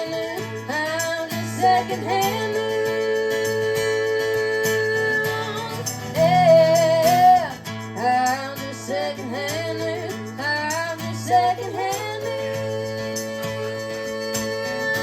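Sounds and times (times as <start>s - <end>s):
person singing: 0.0s - 15.0s.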